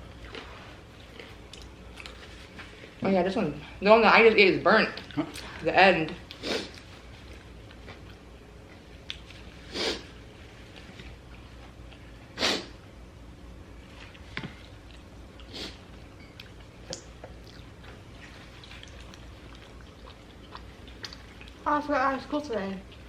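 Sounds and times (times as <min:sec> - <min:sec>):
crunchy eating bursts: 0:00.0 - 0:02.9, 0:13.6 - 0:23.0
chewing clicks: 0:18.6 - 0:21.6.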